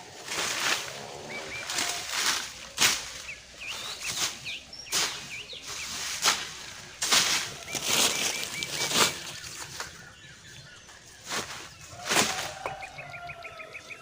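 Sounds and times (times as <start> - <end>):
small birds chirping: 0.0 - 14.0
swishing rustling strokes: 0.2 - 9.9.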